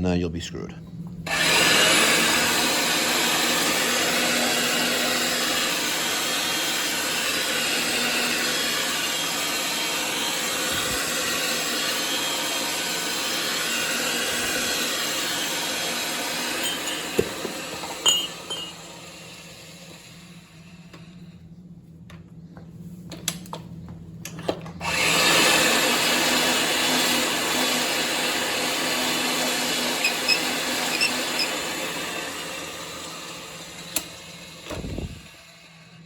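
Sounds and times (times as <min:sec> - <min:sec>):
pipe-threading machine grinding: 0:01.3 - 0:19.0, 0:24.8 - 0:34.8.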